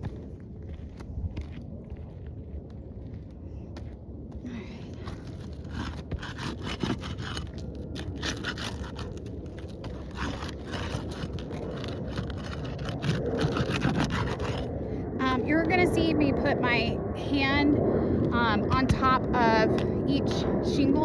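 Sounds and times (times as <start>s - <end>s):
low rumble: 0.0s - 21.0s
scraping under roof shingles: 4.9s - 14.8s.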